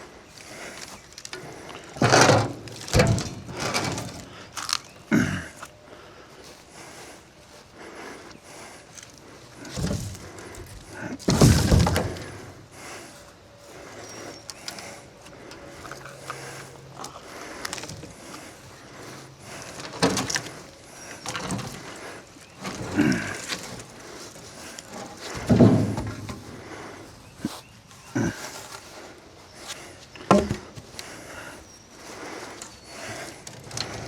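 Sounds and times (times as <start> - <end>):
knocks and thuds: 9.7 - 12.6, 24.9 - 26.6, 30.3 - 30.9.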